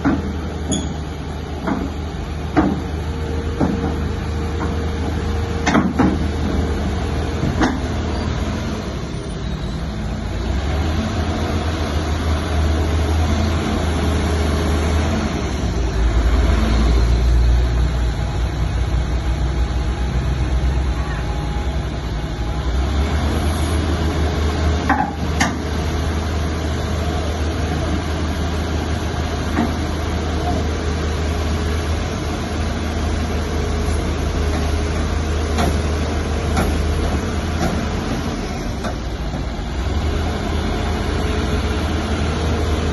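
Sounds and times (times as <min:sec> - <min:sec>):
diesel machinery drone: 0:00.0 - 0:42.9
sharp knocks: 0:01.6 - 0:02.9.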